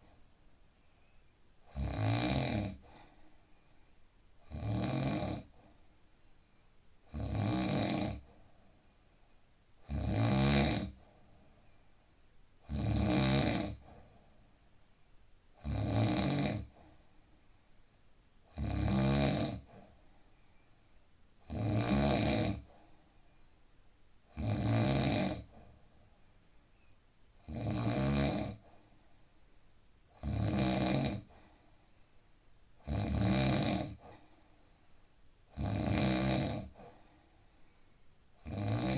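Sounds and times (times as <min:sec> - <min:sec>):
quiet breathing: 0:00.0 - 0:21.5, 0:22.3 - 0:24.3, 0:24.9 - 0:38.9
man snoring: 0:01.7 - 0:02.9, 0:04.5 - 0:05.5, 0:07.1 - 0:08.3, 0:09.9 - 0:11.0, 0:12.7 - 0:13.8, 0:15.6 - 0:16.7, 0:18.5 - 0:19.7, 0:21.5 - 0:22.7, 0:24.3 - 0:25.6, 0:27.4 - 0:28.6, 0:30.2 - 0:31.3, 0:32.8 - 0:34.1, 0:35.6 - 0:36.8, 0:38.4 - 0:38.9.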